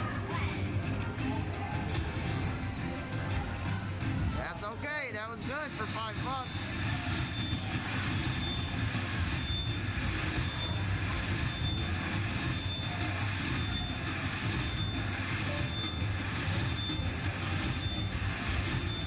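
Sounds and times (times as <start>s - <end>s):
crowd murmur: 0.0s - 8.2s
slot machine chimes: 0.6s - 19.0s.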